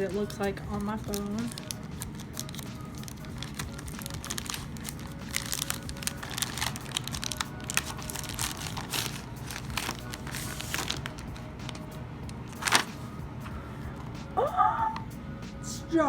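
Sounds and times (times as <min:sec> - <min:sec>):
packaging tearing and crinkling: 0:00.9 - 0:13.1.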